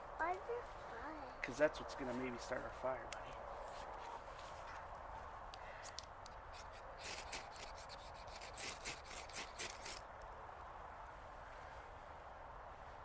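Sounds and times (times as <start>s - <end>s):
striker scraping ferro rod: 6.6s - 10.0s.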